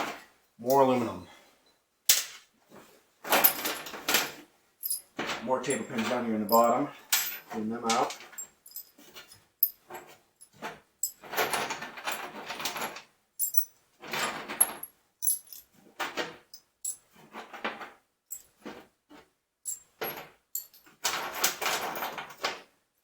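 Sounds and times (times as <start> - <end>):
metal pins clinking in drawer: 3.3 - 9.8, 10.4 - 15.7, 18.3 - 18.6.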